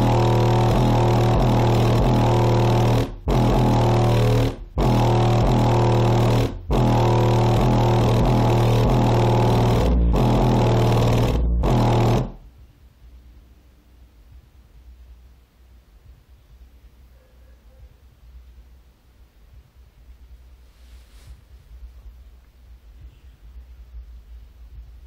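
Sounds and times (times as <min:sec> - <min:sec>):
subwoofer playing bass notes: 0:00.0 - 0:12.6.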